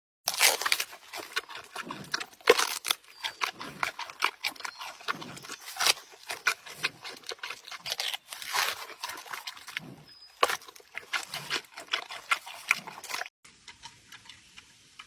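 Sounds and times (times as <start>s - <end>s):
panda crunching food: 0.3s - 14.6s
wet chewing: 0.3s - 15.0s.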